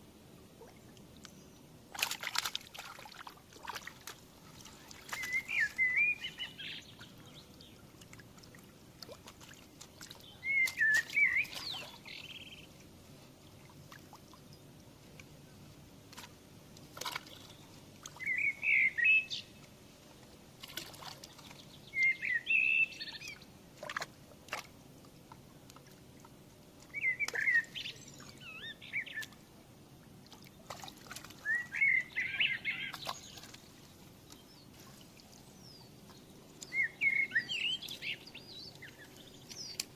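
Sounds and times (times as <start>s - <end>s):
songbird warbling: 4.6s - 7.8s, 10.0s - 12.7s, 18.2s - 19.6s, 21.5s - 23.4s, 26.9s - 29.4s, 31.3s - 33.6s, 35.4s - 39.9s.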